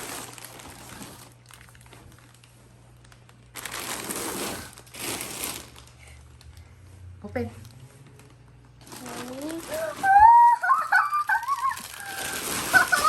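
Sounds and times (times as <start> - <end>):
packaging crinkling: 0.0 - 6.6, 8.1 - 13.0.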